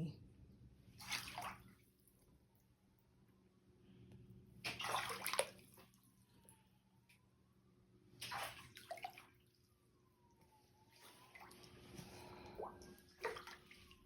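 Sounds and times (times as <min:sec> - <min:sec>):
water sloshing and splashing: 0:00.8 - 0:02.7, 0:04.6 - 0:07.2, 0:08.1 - 0:14.0.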